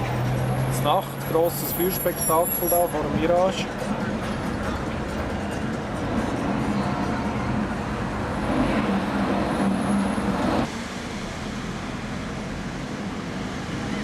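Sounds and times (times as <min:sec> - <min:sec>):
road traffic hum: 0:00.0 - 0:14.0.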